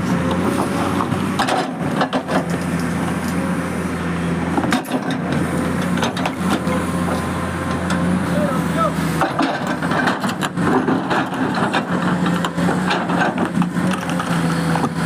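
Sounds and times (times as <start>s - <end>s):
diesel engine running: 0.0s - 15.0s
sharp knocks and clanks: 0.6s - 2.6s, 9.2s - 14.2s.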